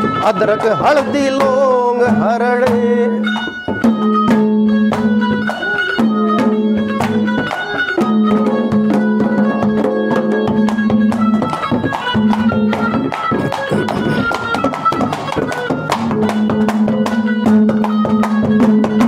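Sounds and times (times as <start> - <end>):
hand drum beats: 0.0 - 19.0
melody instrument holding long notes: 4.2 - 16.7.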